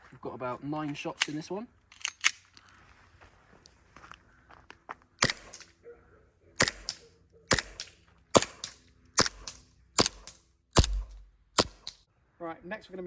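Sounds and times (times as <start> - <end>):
airsoft pistol shots: 5.2 - 5.6, 6.6 - 12.0.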